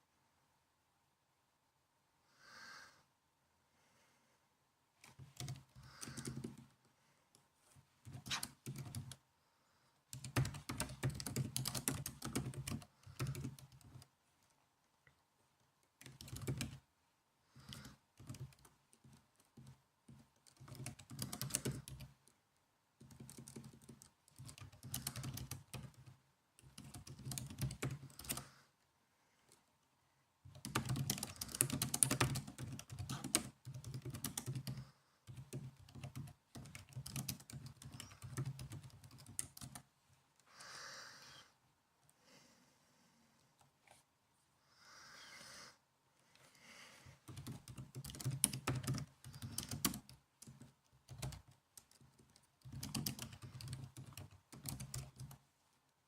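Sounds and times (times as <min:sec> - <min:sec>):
typing on a laptop keyboard: 0:05.0 - 0:06.7, 0:08.0 - 0:09.2, 0:10.1 - 0:14.1, 0:16.0 - 0:16.9, 0:17.6 - 0:22.4, 0:23.0 - 0:28.5, 0:30.5 - 0:39.9, 0:47.2 - 0:55.4.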